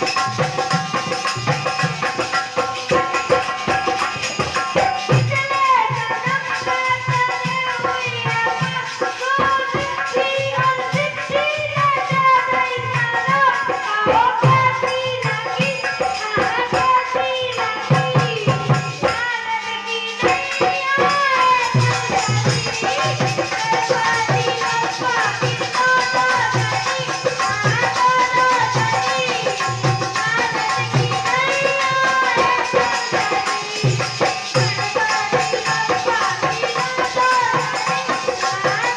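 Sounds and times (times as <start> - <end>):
rattling percussion: 0.0 - 38.9
girl singing: 1.9 - 38.9
drum beat: 20.2 - 38.9.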